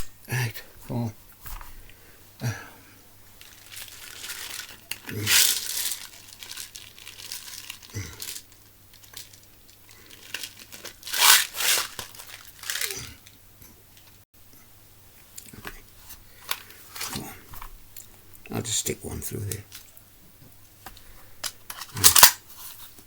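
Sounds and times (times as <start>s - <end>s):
material crinkling and rustling: 3.3s - 13.3s.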